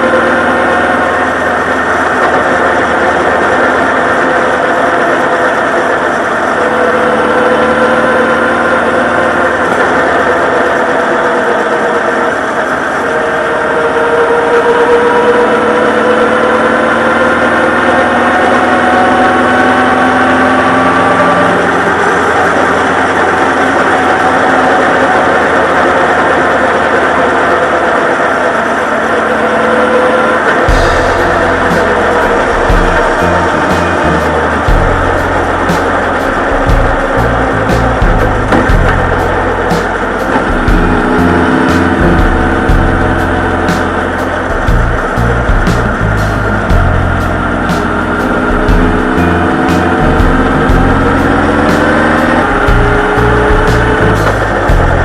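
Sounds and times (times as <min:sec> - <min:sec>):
wind and road noise: 0:00.0 - 0:55.0
motorcycle engine running: 0:30.6 - 0:55.0.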